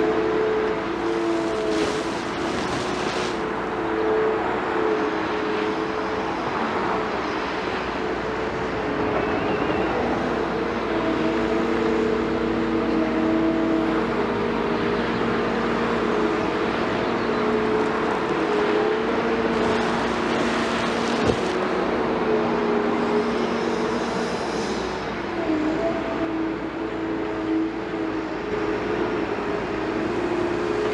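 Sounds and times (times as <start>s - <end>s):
diesel engine running: 10.4s - 24.4s.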